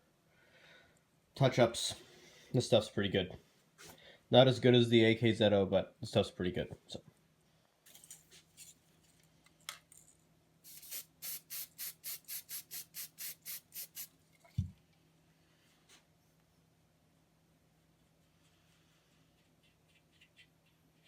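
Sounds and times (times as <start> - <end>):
aerosol spray bursts: 10.7 - 14.1.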